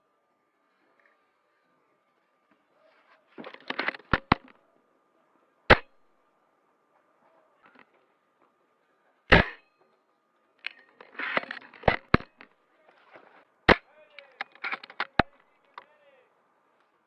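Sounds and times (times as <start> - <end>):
airsoft gun shots: 5.7 - 5.9, 9.3 - 9.6, 11.8 - 12.3.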